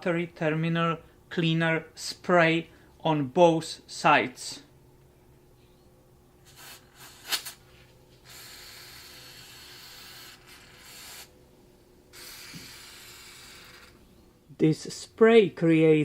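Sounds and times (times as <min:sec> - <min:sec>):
aerosol can spraying: 0:06.5 - 0:07.6, 0:08.2 - 0:11.3, 0:12.1 - 0:14.0.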